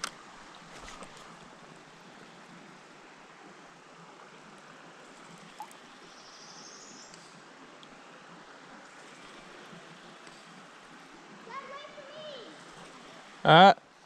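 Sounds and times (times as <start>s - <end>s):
creek water running: 0.0s - 14.0s.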